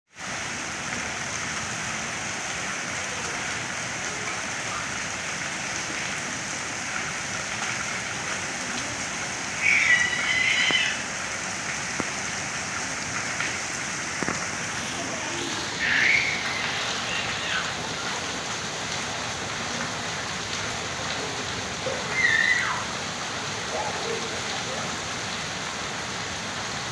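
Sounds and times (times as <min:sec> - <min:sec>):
light rain falling: 0:00.1 - 0:26.9
high-pitched sound: 0:14.4 - 0:17.9.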